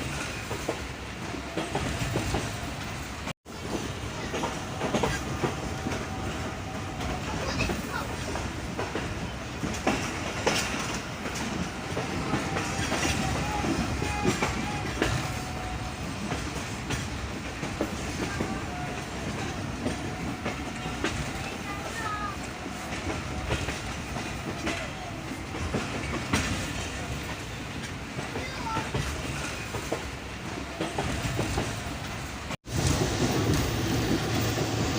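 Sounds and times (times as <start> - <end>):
train rumble: 0.0 - 34.9
train wheels clattering over rail joints: 0.0 - 34.9.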